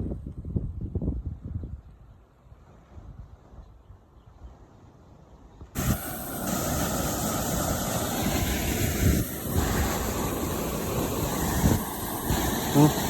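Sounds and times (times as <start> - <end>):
water rushing and spraying: 5.8 - 13.0.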